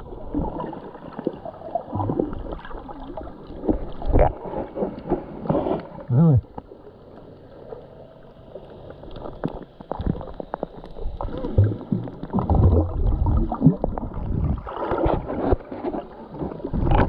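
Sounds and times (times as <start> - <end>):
water sloshing and gurgling: 0.0 - 17.0
splashes and knocks: 11.4 - 17.0.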